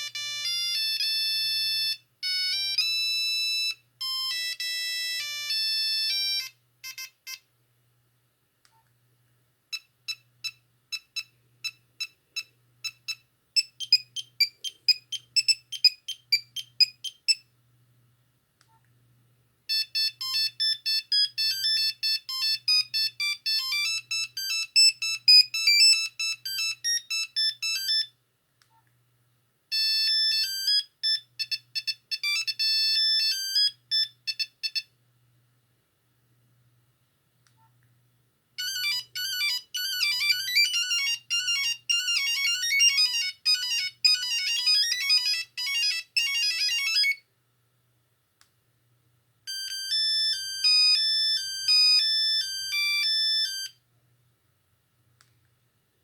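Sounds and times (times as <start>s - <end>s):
beeping phone ringtone melodies: 0.0s - 7.4s, 10.1s - 17.4s, 19.7s - 28.1s, 29.7s - 34.9s, 38.6s - 47.2s, 49.5s - 53.8s.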